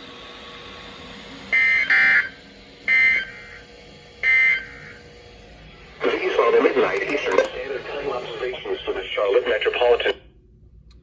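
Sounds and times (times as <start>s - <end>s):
faint radio hiss: 6.0s - 10.2s.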